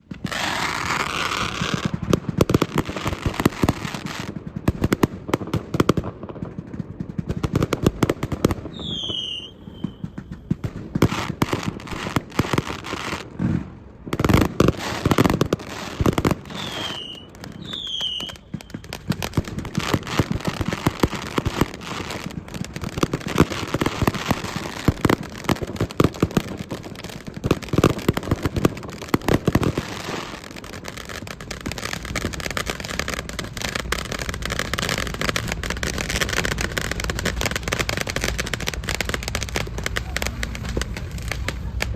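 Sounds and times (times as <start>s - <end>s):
firecrackers popping: 0.0s - 41.9s
high falling whistles: 8.7s - 10.2s, 16.5s - 19.0s.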